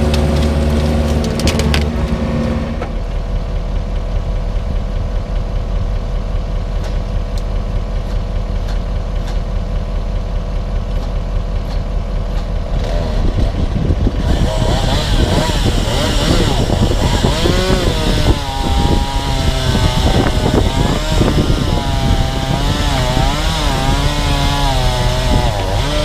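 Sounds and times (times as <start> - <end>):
excavator diesel engine idling: 0.0 - 12.9.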